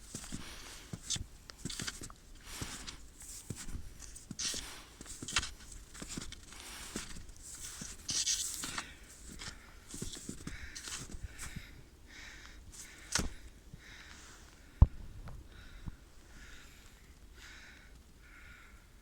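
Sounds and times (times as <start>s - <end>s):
rustling handling noise: 0.0s - 11.6s
footsteps: 0.1s - 11.5s.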